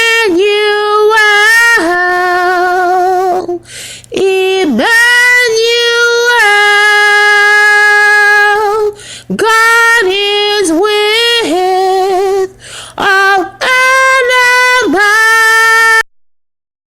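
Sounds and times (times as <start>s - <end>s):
woman singing unaccompanied: 0.0s - 16.0s.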